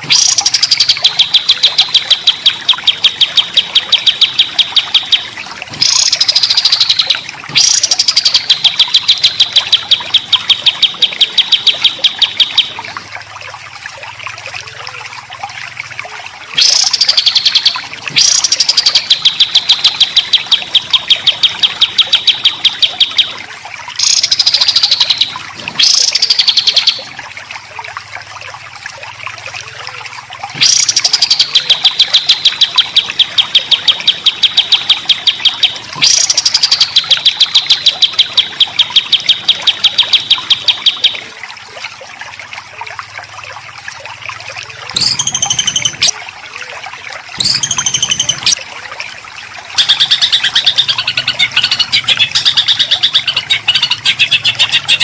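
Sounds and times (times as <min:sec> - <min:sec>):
songbird singing harsh rapid notes: 0:00.0 - 0:12.9, 0:16.6 - 0:23.4, 0:24.0 - 0:27.1, 0:30.6 - 0:41.3, 0:44.9 - 0:46.2, 0:47.4 - 0:48.6, 0:49.8 - 0:55.0.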